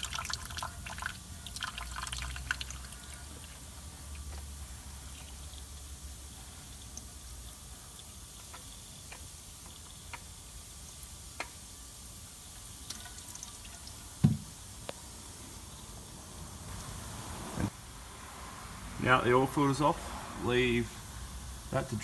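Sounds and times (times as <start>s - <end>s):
oil dripping into a pan: 0.0s - 16.0s
loud low thump: 14.2s - 14.5s.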